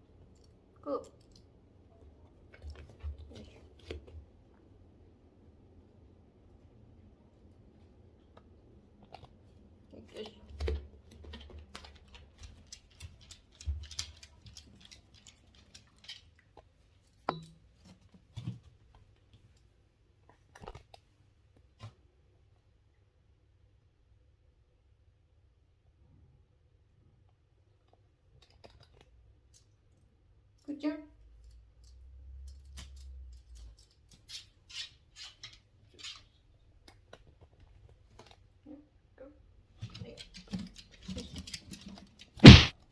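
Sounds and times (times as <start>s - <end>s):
dog claws clicking on floor: 10.2s - 16.8s, 31.4s - 38.4s, 39.8s - 42.8s
loud knocks: 42.4s - 42.7s.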